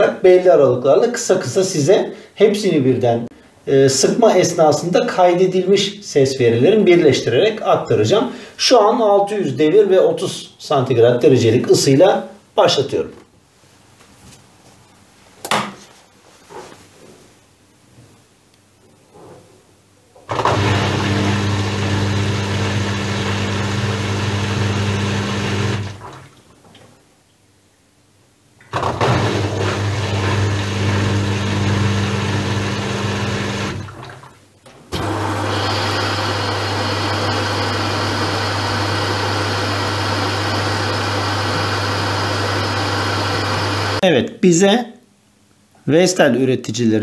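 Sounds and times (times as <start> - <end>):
low mains hum: 44.0 - 47.0.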